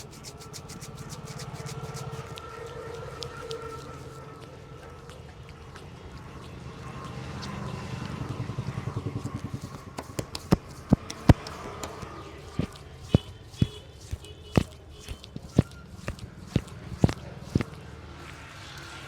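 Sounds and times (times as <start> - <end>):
hand slaps: 9.6 - 17.8
hands chopping taps on head: 9.6 - 17.8.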